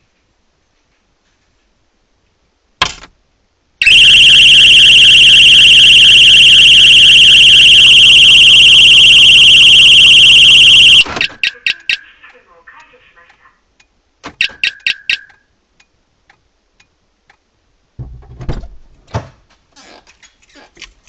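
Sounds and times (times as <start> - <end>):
car alarm siren high-pitched tone: 3.8 - 12.0, 14.4 - 15.3.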